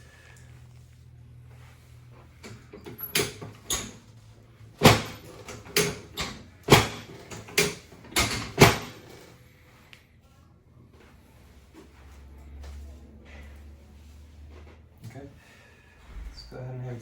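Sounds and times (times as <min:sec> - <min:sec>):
wooden and mechanical clunks: 0:04.8 - 0:09.2.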